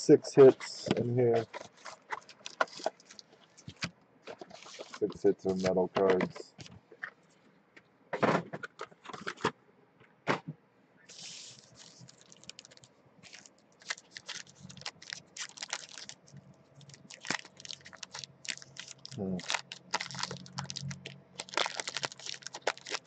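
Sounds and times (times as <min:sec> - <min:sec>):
packaging ripping: 0:01.4 - 0:03.2, 0:04.3 - 0:05.8, 0:11.1 - 0:23.0
packaging crinkling: 0:01.4 - 0:06.6, 0:11.1 - 0:23.0.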